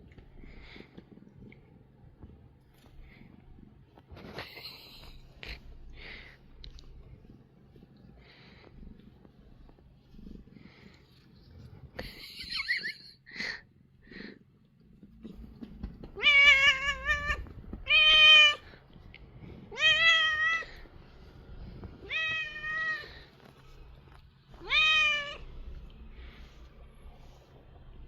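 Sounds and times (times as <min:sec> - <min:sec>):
cat meowing: 0:16.2 - 0:18.6, 0:19.7 - 0:20.8, 0:22.0 - 0:23.2, 0:24.6 - 0:25.4.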